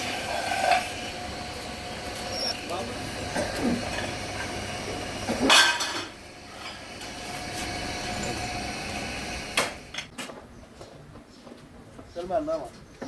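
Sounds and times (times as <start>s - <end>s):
steady machine hum: 0.0s - 10.1s.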